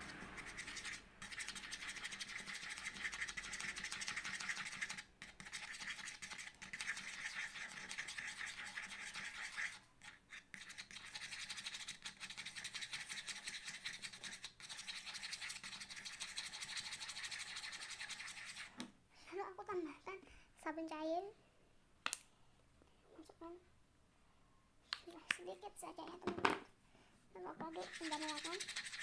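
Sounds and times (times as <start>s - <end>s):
stirrer scraping glue container: 0.0s - 18.9s, 27.4s - 29.0s.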